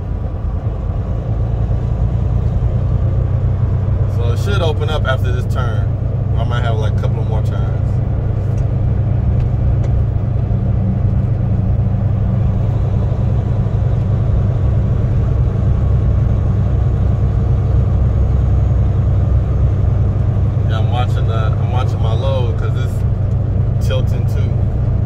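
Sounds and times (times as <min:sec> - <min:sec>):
truck engine and road noise: 0:00.0 - 0:25.0.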